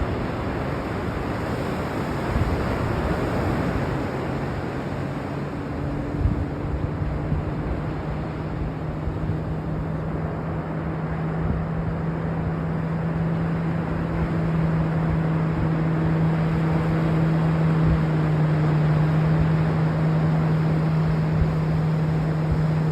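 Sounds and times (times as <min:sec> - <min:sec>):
low hum: 0:00.0 - 0:22.9
ocean surf: 0:00.0 - 0:22.9
wind: 0:00.0 - 0:22.9.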